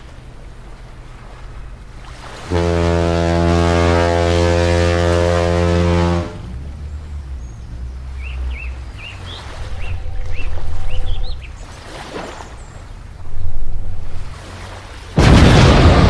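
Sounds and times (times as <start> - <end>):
ship's horn blast: 2.4 - 11.6
low rumble: 4.5 - 11.8, 12.6 - 16.0
birds chirping: 5.9 - 14.3.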